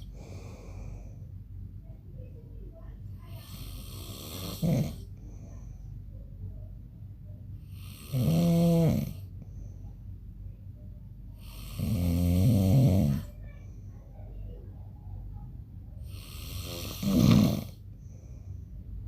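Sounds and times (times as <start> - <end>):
man snoring: 3.4 - 5.0, 7.7 - 9.2, 11.4 - 13.3, 16.1 - 17.8.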